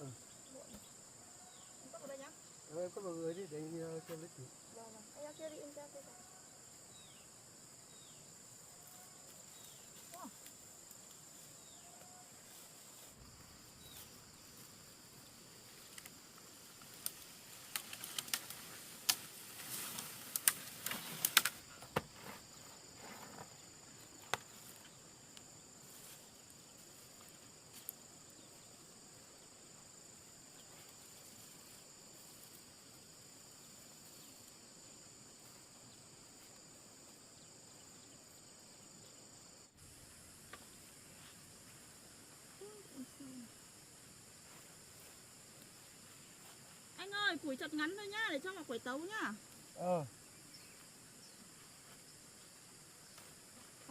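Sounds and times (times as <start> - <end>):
insects droning: 0.0 - 53.9
vegetation snapping and crackling: 15.8 - 21.7.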